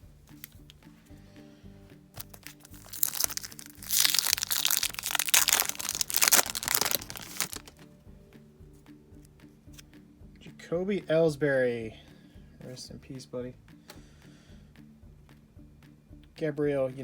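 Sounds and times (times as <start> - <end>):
quiet background music: 0.0 - 17.0
wrapper tearing and crinkling: 2.2 - 7.8.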